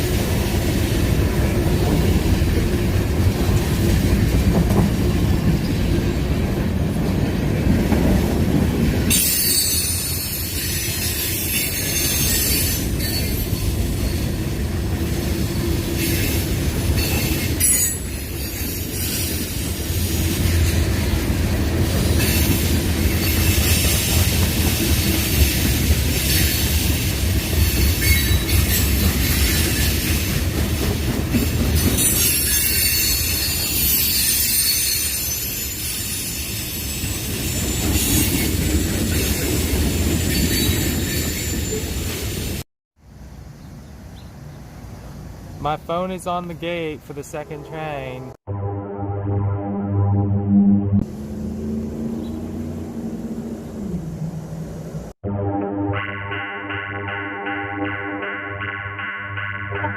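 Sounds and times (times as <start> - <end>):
rail cars clattering: 0.0 - 42.6
screeching train wheels: 0.0 - 42.6
freight train rolling past: 0.0 - 48.4, 51.0 - 55.2.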